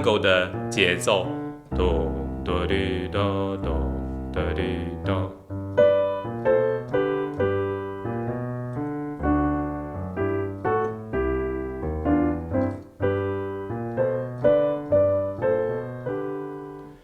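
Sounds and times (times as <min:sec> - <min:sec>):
blues piano walking bass: 0:00.0 - 0:17.0.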